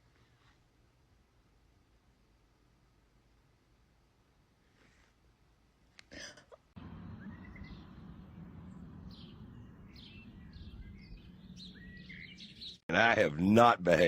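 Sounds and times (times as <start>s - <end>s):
steady background noise: 6.8s - 12.0s
small birds chirping: 6.8s - 12.9s.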